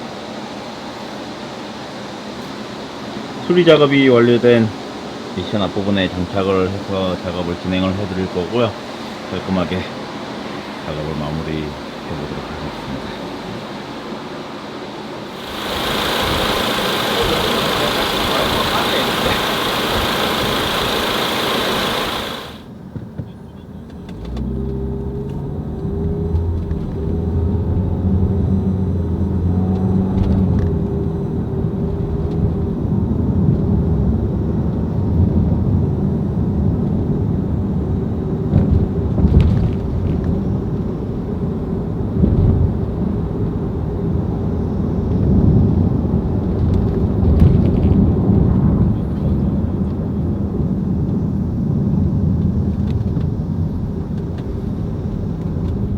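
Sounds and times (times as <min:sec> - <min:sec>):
car engine starting and running: 0:15.3 - 0:22.7
steady hiss: 0:15.3 - 0:22.7.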